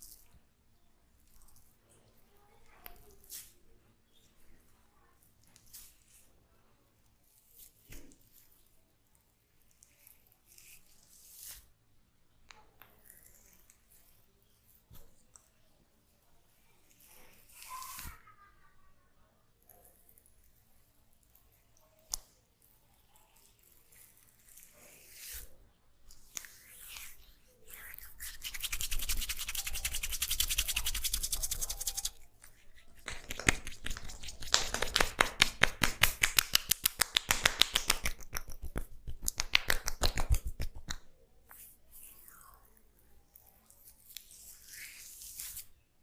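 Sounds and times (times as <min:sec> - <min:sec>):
hands rubbing oiled head: 0:26.3 - 0:42.3.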